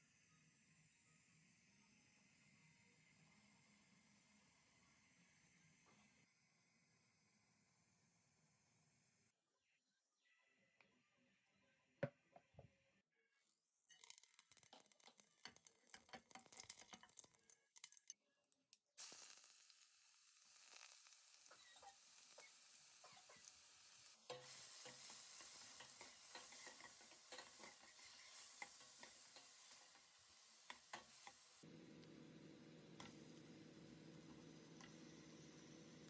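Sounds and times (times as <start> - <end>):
food sizzling in hot oil: 13.9 - 18.2, 19.0 - 36.0
spoon stirring in a pot: 13.9 - 18.2, 24.3 - 31.6.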